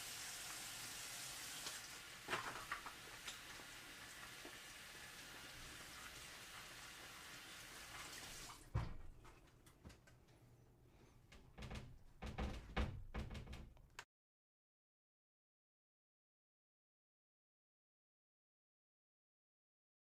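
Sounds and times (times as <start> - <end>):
heavy thumps and knocks: 11.5 - 13.8.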